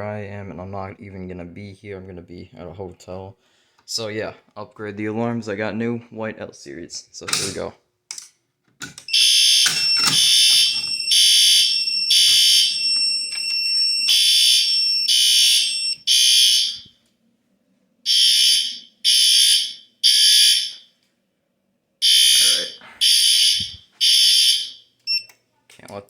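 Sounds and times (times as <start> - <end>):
fire alarm horn blasts: 9.1 - 16.9, 18.0 - 20.9, 22.0 - 25.3.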